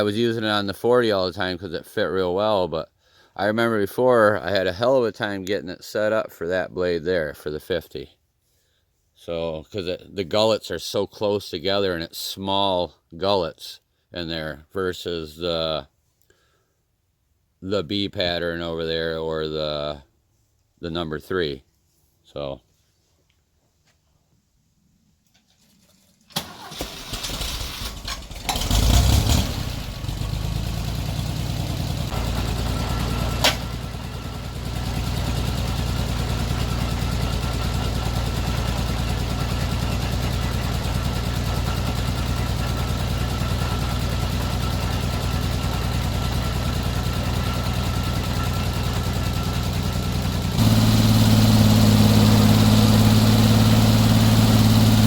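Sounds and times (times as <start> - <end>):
engine starting and idling: 26.3 - 55.0.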